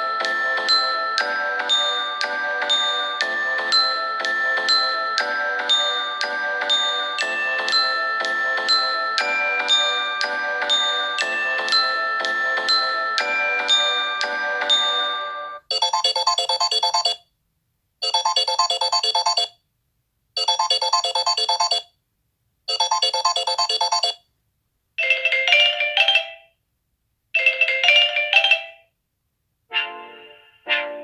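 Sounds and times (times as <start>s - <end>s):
melodic chime ringtone: 0.0s - 17.2s, 22.7s - 24.2s, 25.0s - 26.5s, 27.4s - 28.9s.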